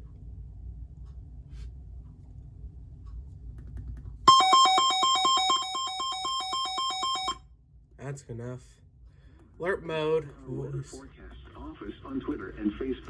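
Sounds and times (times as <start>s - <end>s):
electronic warbling siren: 4.3s - 7.4s.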